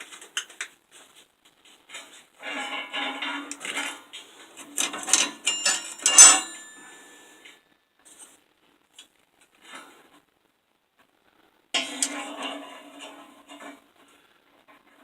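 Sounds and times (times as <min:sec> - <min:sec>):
metal pieces clanking: 0:04.8 - 0:07.2.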